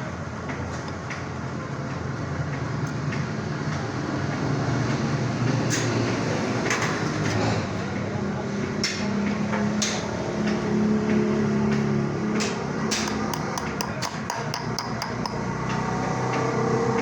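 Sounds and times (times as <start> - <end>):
sharp metallic clicks: 12.9 - 15.4.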